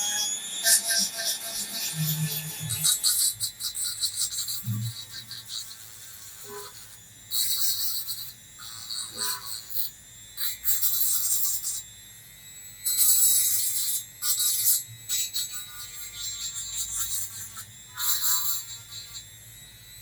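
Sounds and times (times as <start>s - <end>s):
cork being scraped: 0.6s - 11.8s, 12.9s - 19.2s.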